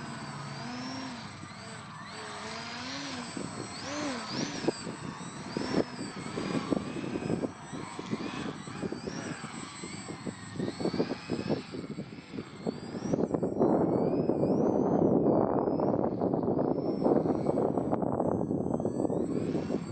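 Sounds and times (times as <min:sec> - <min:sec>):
model plane motor whining: 0:00.0 - 0:19.9
wind buffeting microphone: 0:00.0 - 0:19.9.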